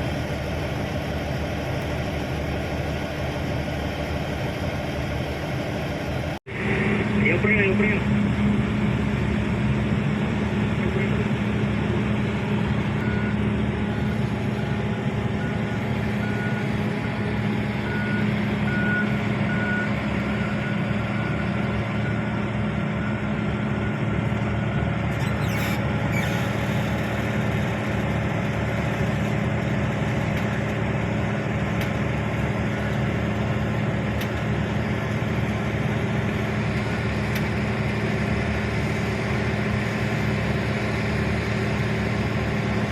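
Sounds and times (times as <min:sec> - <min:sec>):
excavator diesel engine running: 0:00.0 - 0:42.9
reversing alarm beeping: 0:13.0 - 0:14.6, 0:15.3 - 0:25.0.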